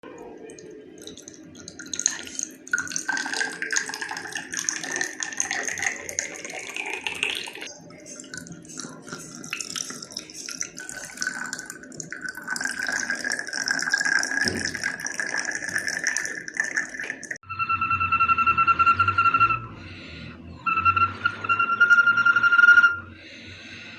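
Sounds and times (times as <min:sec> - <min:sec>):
water gurgling: 0:00.0 - 0:17.4
whistling bottle high whistle: 0:17.5 - 0:19.8, 0:20.6 - 0:23.1.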